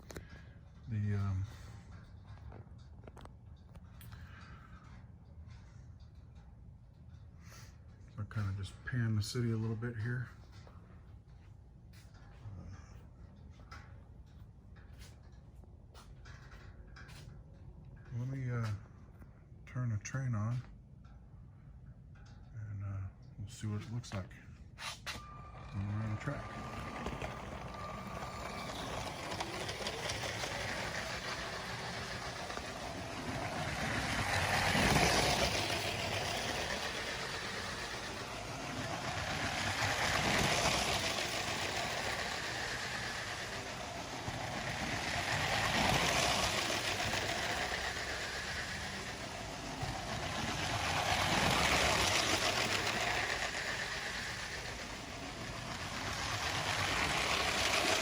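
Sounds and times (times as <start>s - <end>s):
toy train running on plastic track: 0.0s - 6.2s, 7.4s - 10.7s, 23.5s - 58.0s.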